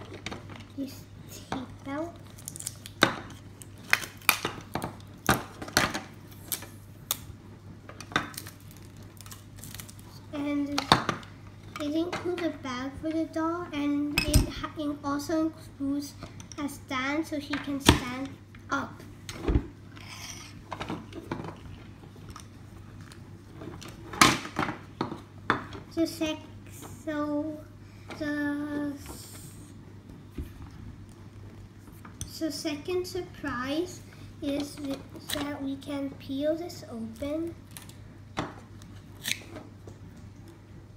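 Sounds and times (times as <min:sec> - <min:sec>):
plastic packaging clicks and clatters: 0:08.0 - 0:10.1.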